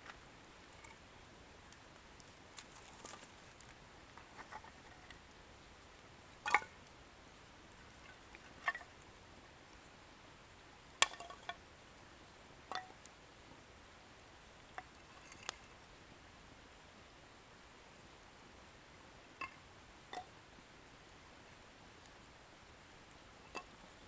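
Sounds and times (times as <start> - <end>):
wood fire crackling: 0.0 - 7.0.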